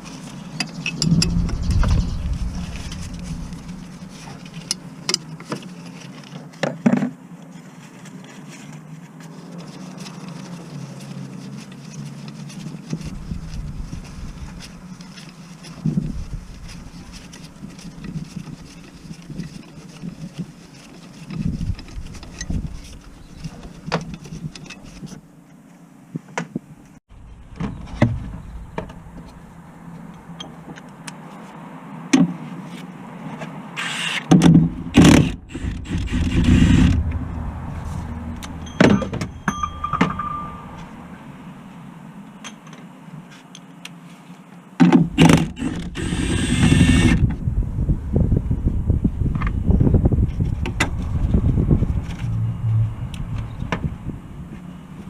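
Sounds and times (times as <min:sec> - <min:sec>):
mechanical rattling bursts: 0:34.9 - 0:38.5, 0:45.2 - 0:47.2.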